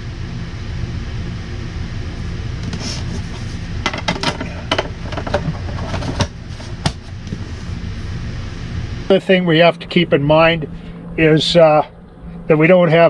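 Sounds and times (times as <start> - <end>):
steady low hum: 0.0 - 13.0
electrical panel clicks and knocks: 3.8 - 7.0.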